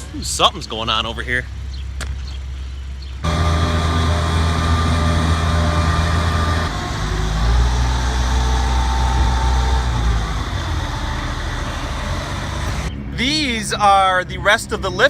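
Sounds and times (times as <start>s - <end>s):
machine engine running: 3.2s - 12.9s
high whine: 3.2s - 13.3s.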